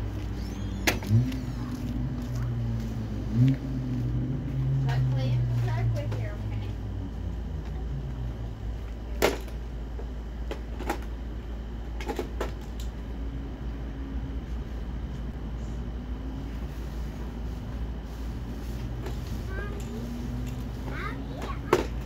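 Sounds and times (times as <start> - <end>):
steady low hum: 0.0 - 22.0
knocks and clatters of handling: 21.3 - 22.0.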